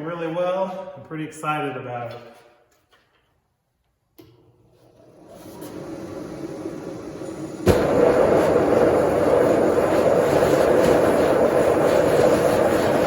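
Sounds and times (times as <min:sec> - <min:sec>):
burner and blower rushing: 0:04.9 - 0:13.0
burner lighting whoomp: 0:05.0 - 0:13.0
rush of air from blower: 0:05.0 - 0:13.0.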